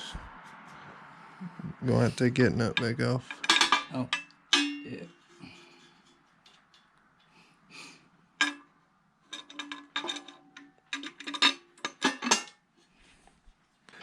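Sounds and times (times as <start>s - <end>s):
hand tools clicking on metal: 2.8s - 7.4s, 9.3s - 12.6s.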